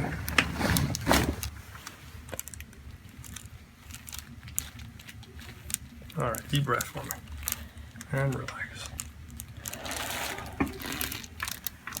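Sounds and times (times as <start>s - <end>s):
rustling: 0.0s - 8.0s.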